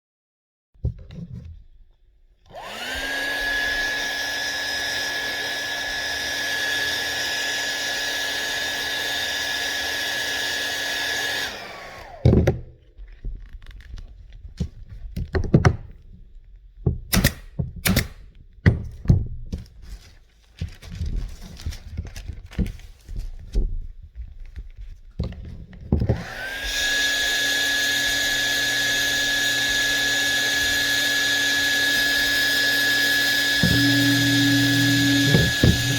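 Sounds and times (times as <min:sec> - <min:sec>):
electric machine whirring: 0:02.5 - 0:12.4, 0:26.1 - 0:35.9
sharp knocks and clicks: 0:33.6 - 0:35.9.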